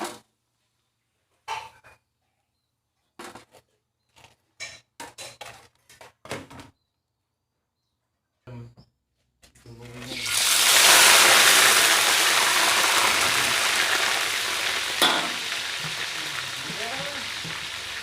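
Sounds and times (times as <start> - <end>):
food sizzling in hot oil: 10.0 - 18.0.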